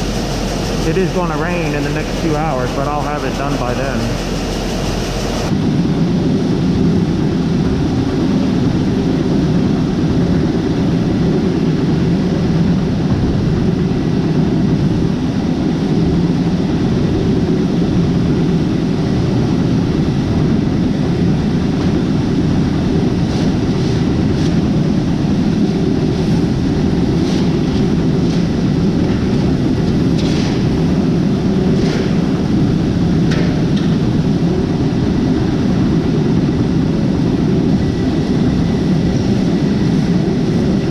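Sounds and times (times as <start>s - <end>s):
vehicle engine rumbling: 0.0s - 5.6s.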